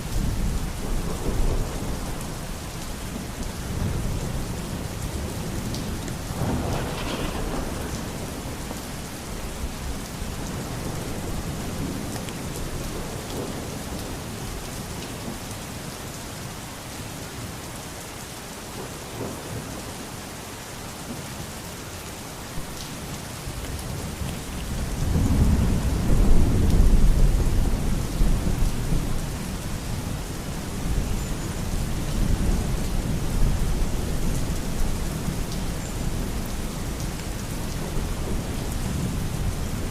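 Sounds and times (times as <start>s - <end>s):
steady rain falling: 0.0s - 39.9s
rolls of thunder: 6.3s - 8.9s.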